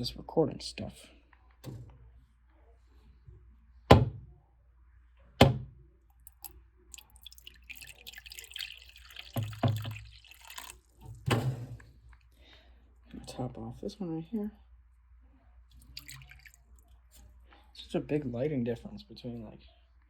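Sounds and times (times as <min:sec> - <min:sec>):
sharp knocks on enclosure: 0:03.9 - 0:04.2, 0:05.4 - 0:05.7
water pouring into bowl: 0:06.3 - 0:11.4, 0:15.7 - 0:16.8.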